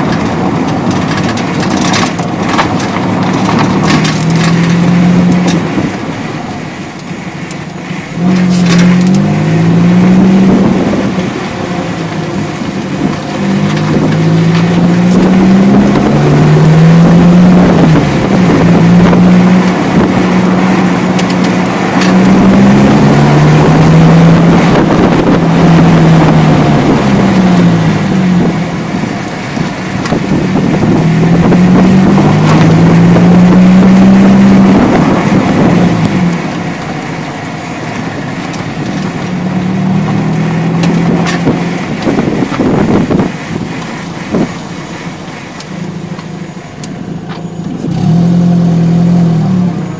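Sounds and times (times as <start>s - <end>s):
metallic knocks and rattles: 0.0s - 5.9s
car engine through gears: 0.0s - 49.9s
road and wind noise: 0.0s - 49.9s.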